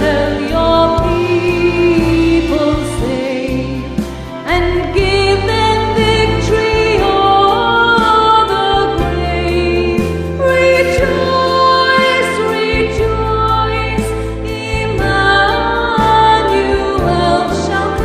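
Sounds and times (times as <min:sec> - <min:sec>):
instrumental accompaniment with bass: 0:00.0 - 0:18.0.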